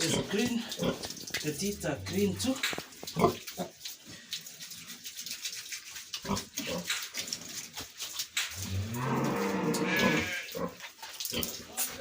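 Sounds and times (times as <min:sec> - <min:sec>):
pig grunting: 0:08.6 - 0:10.8.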